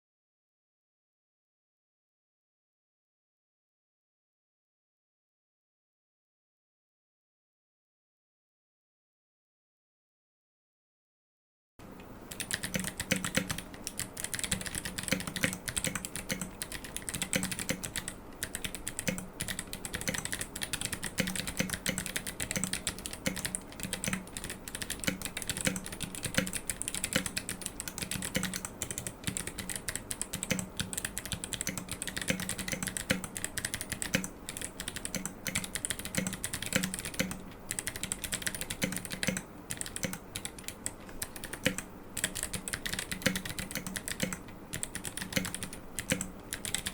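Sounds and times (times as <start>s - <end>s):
clicky keyboard typing: 12.0s - 46.9s.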